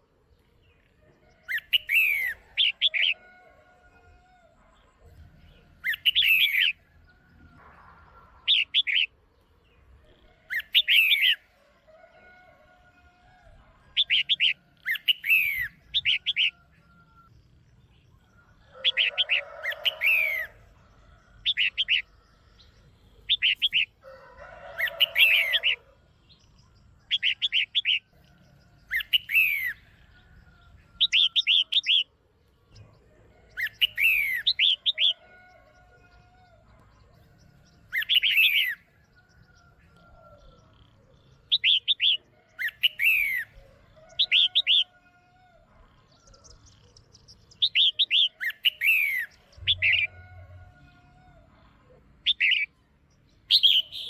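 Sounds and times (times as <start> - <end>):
bird chirping and whistling: 53.5 - 54.0.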